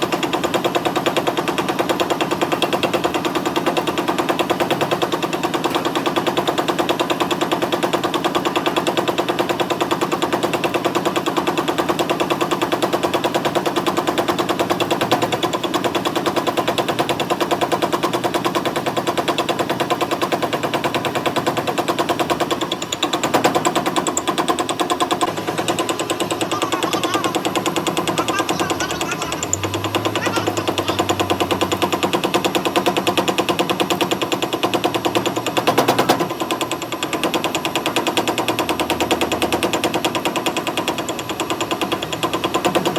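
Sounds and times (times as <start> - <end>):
metal lathe running and cutting: 22.2 - 42.9.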